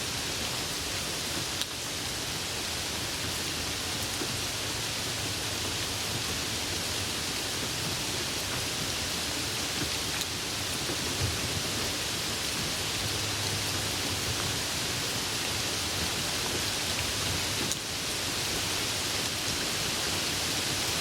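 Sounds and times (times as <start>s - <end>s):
rain falling: 0.0s - 21.0s.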